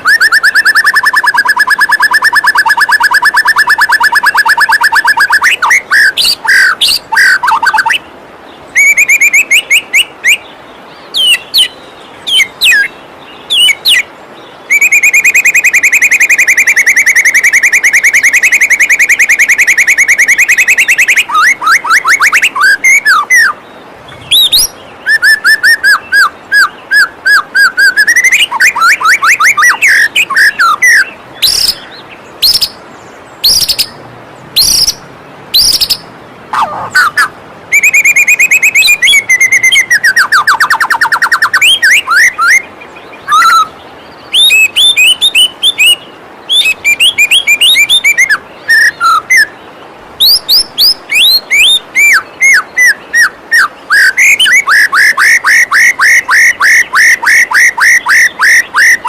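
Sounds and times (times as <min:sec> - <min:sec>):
bird singing rapid trills: 0:00.0 - 0:59.0
waterfall rushing: 0:20.9 - 0:59.0.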